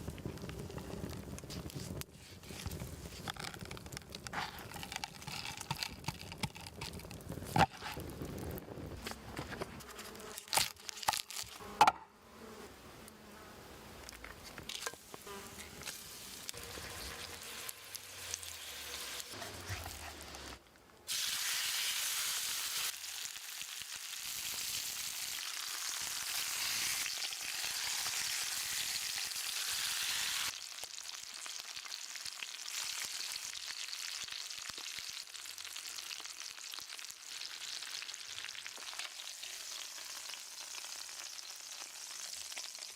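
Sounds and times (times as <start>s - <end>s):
steak sizzling: 14.6s - 42.9s.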